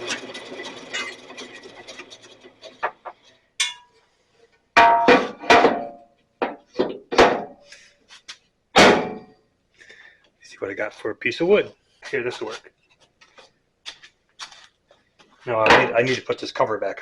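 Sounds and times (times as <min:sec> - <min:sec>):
bandsaw hum coasting down: 0:00.0 - 0:02.7.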